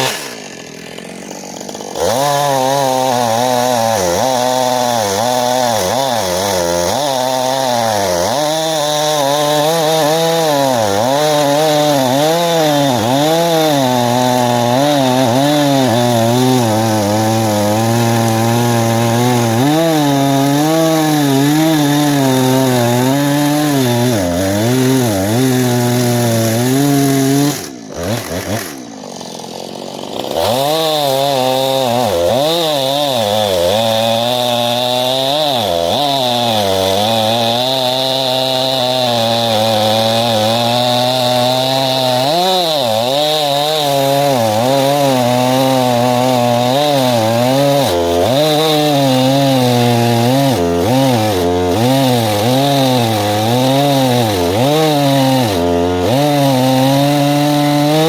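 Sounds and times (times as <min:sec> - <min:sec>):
chainsaw cutting wood: 0:00.0 - 0:58.0.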